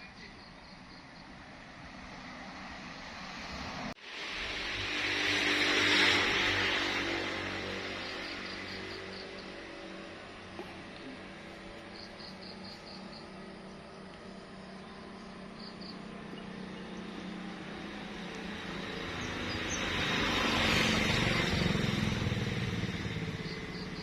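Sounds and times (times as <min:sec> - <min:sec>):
low engine hum: 0:00.1 - 0:24.0
broad rushing noise: 0:01.6 - 0:11.9
high insect chirps: 0:07.6 - 0:10.0, 0:11.6 - 0:16.7.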